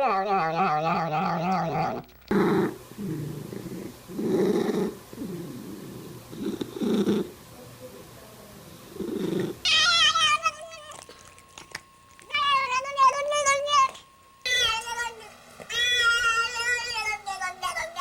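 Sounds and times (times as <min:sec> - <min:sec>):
cat yowling: 0:09.7 - 0:11.4, 0:12.2 - 0:14.0.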